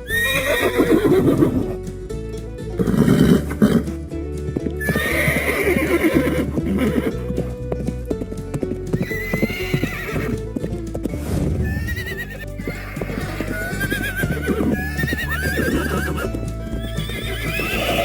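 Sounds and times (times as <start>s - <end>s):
horses whinnying: 0.0s - 1.8s, 2.8s - 3.9s, 4.8s - 7.4s, 9.0s - 10.5s, 11.2s - 18.0s
background music: 0.0s - 18.0s
hooves clip-clopping: 0.0s - 18.0s.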